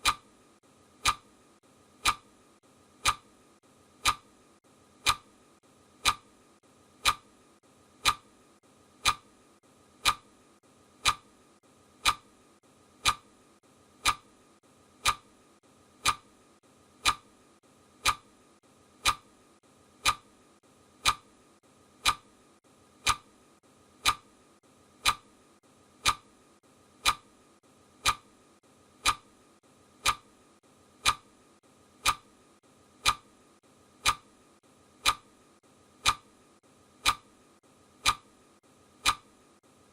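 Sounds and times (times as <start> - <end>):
clock ticking: 0.0 - 0.4, 1.0 - 1.3, 2.0 - 2.3, 3.0 - 3.4, 4.0 - 4.4, 5.0 - 5.4, 6.0 - 6.4, 7.0 - 7.4, 8.0 - 8.4, 9.0 - 9.4, 10.0 - 10.4, 11.0 - 11.4, 12.0 - 12.3, 13.0 - 13.3, 14.0 - 14.4, 15.0 - 15.3, 16.0 - 16.3, 17.0 - 17.3, 18.0 - 18.4, 19.0 - 19.4, 20.0 - 20.4, 21.0 - 21.3, 22.0 - 22.3, 23.0 - 23.3, 24.0 - 24.3, 25.0 - 25.3, 26.0 - 26.3, 27.0 - 27.4, 28.0 - 28.4, 29.0 - 29.4, 30.0 - 30.4, 31.0 - 31.4, 32.0 - 32.4, 33.0 - 33.4, 34.0 - 34.4, 35.0 - 35.4, 36.0 - 36.3, 37.0 - 37.4, 38.0 - 38.4, 39.0 - 39.3.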